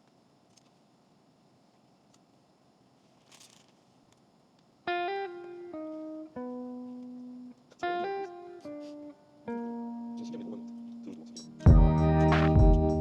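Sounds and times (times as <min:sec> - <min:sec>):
plucked guitar melody: 0:04.9 - 0:13.0.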